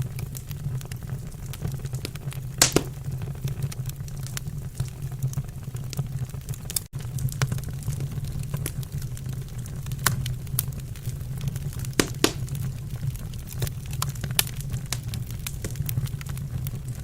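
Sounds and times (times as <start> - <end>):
fire rumbling: 0.0 - 17.0
wood fire crackling: 0.0 - 17.0.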